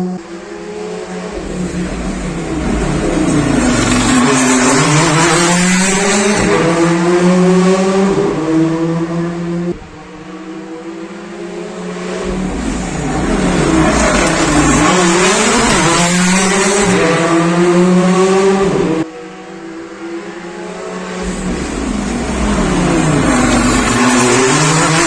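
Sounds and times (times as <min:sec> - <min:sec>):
quieter engine: 0:00.0 - 0:25.0
rally car engine accelerating past: 0:00.0 - 0:25.0.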